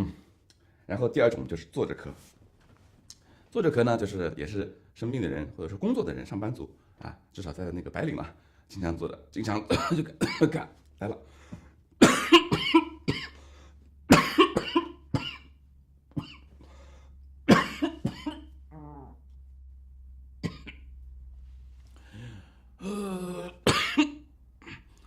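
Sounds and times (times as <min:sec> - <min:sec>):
man coughing hard: 0:09.7 - 0:10.6, 0:12.0 - 0:13.4, 0:14.1 - 0:15.5, 0:16.2 - 0:16.5, 0:17.5 - 0:18.6, 0:20.4 - 0:20.8, 0:22.8 - 0:25.0
short strained vocal sound: 0:22.1 - 0:23.6.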